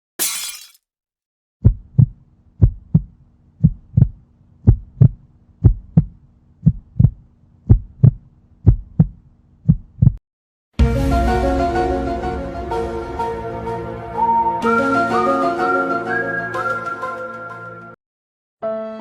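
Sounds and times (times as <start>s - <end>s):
heartbeat thumps: 1.6s - 10.2s.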